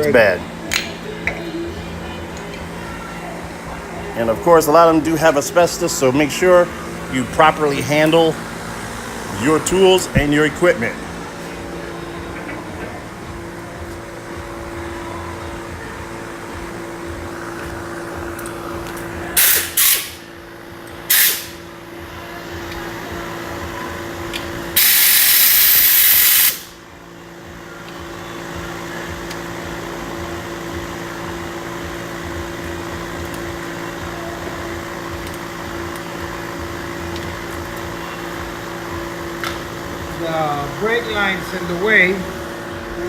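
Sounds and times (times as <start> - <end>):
steady shop hum: 0.0 - 43.0
pressurized spray hissing: 24.8 - 26.7.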